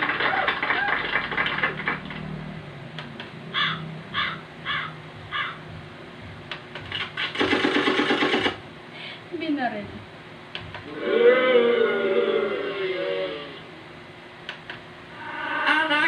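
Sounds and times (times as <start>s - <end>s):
crow cawing: 3.6s - 5.6s.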